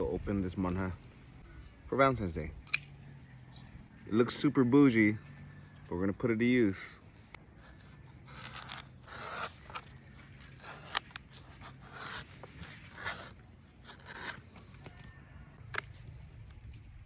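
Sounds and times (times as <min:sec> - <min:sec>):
sharp click: 0:02.6 - 0:03.0
knife scraping coconut husk: 0:06.7 - 0:16.6.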